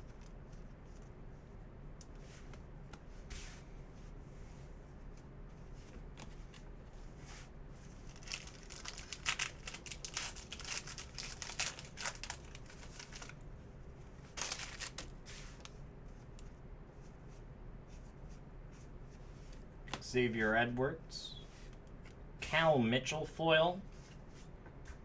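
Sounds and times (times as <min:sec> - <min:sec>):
foil wrapper ripping and crackling: 0:08.0 - 0:13.4, 0:14.3 - 0:15.7.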